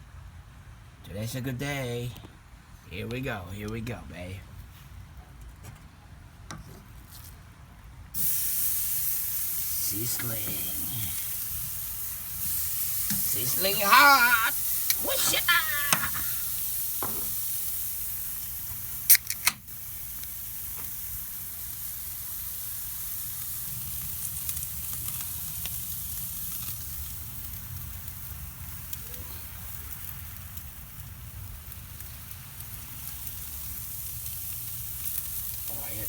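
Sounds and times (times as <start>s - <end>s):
steaks sizzling on a grill: 8.2s - 36.0s
sharp clicks: 19.1s - 19.6s.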